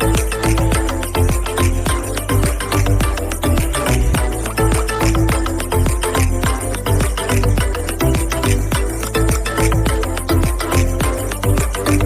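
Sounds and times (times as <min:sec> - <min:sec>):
electronic music with heavy bass: 0:00.0 - 0:12.0.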